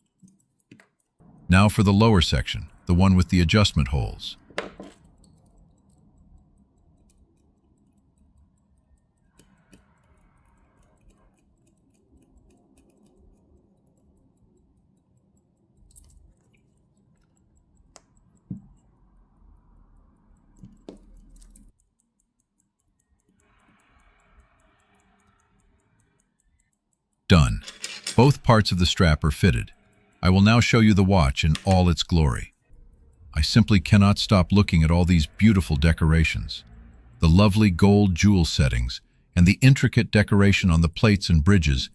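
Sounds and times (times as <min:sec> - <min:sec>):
small clicks and taps of tools: 0:00.0 - 0:01.2, 0:04.4 - 0:28.2
pocket watch ticking: 0:00.0 - 0:41.9.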